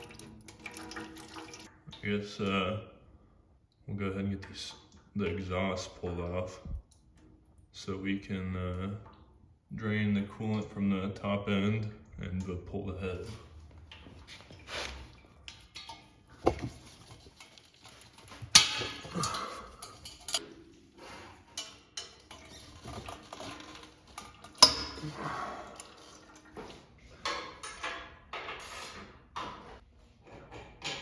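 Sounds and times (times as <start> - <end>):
wrenches and metal parts clanking: 13.0 - 31.0.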